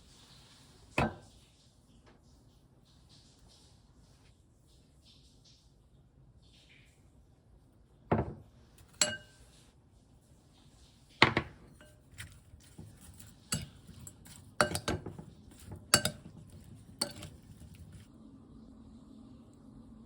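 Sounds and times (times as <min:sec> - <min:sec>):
dishes clinking: 0:01.0 - 0:01.3, 0:08.1 - 0:09.6, 0:11.2 - 0:18.1.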